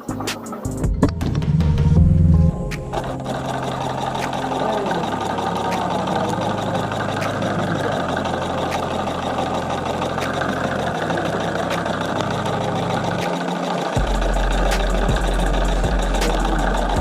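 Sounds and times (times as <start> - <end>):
solenoid engine clattering: 0.0 - 17.0.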